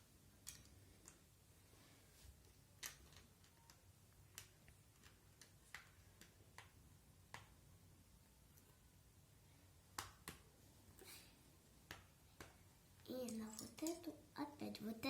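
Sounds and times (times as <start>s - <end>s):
plastic pieces clicking together: 0.4s - 1.2s, 2.8s - 6.8s, 11.9s - 14.1s.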